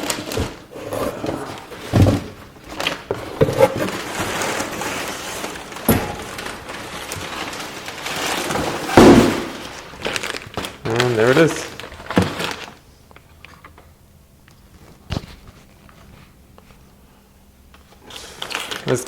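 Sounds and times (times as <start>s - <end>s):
packing paper rustling: 0.0s - 13.8s, 17.7s - 19.0s
sharp knocks and thuds: 8.8s - 9.7s.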